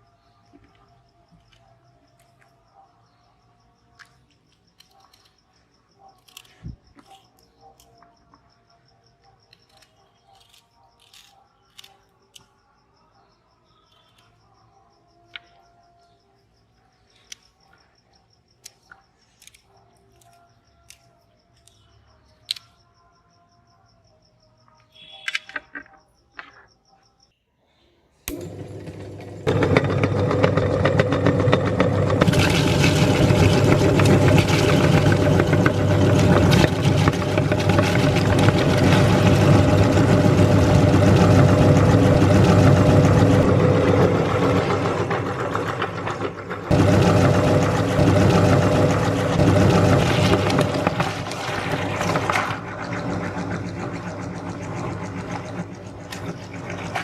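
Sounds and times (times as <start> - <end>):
electric meat grinder grinding: 28.3 - 57.0.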